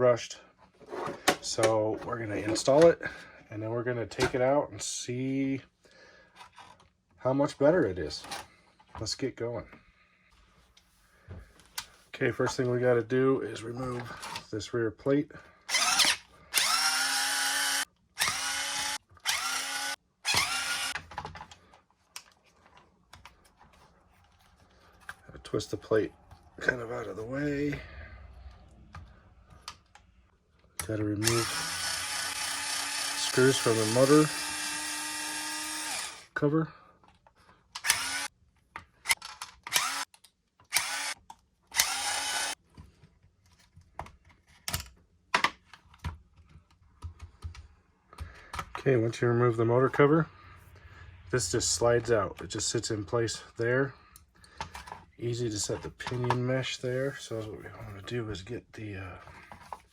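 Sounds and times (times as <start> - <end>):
electric drill whirring: 15.7 - 21.0, 31.2 - 36.3, 37.8 - 38.3, 39.0 - 40.1, 40.7 - 42.6
electric screwdriver whining: 15.7 - 21.1, 31.2 - 36.3, 37.8 - 38.3, 39.0 - 42.6.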